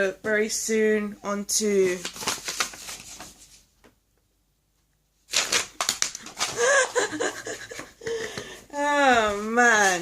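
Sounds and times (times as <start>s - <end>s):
packaging rustling: 2.0s - 3.6s, 5.3s - 7.8s.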